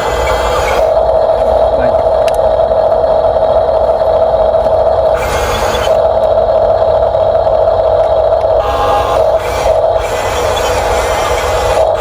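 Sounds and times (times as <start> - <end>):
low rumble: 0.0 - 12.0
small electric motors whining: 0.0 - 12.0.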